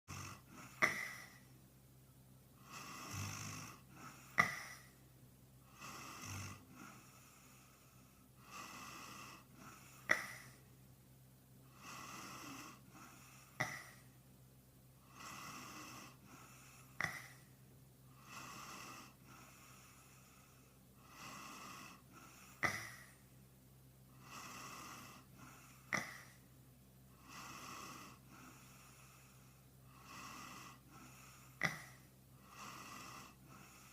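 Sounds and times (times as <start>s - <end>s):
man snoring: 0.1s - 1.5s, 2.6s - 5.0s, 5.7s - 10.6s, 11.7s - 14.0s, 15.0s - 17.5s, 18.1s - 23.2s, 24.1s - 26.4s, 27.2s - 33.9s
sharp snort-like click: 0.8s - 1.3s, 4.4s - 4.8s, 10.1s - 10.5s, 13.6s - 14.0s, 17.0s - 17.4s, 22.6s - 23.1s, 25.9s - 26.3s, 31.6s - 32.0s.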